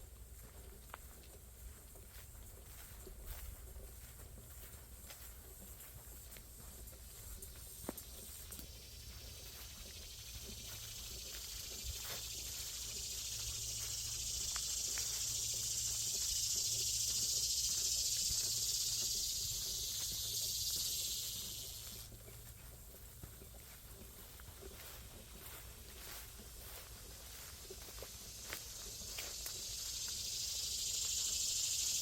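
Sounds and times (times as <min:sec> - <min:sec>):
faint ticks: 0:00.4 - 0:32.0
high-pitched insect buzz: 0:07.1 - 0:22.5, 0:24.8 - 0:32.0.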